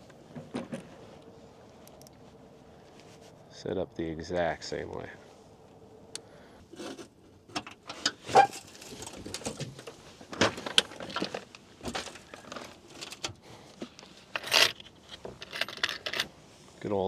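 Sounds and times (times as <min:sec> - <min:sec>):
fishing tackle clicks and rustles: 0:06.7 - 0:16.4.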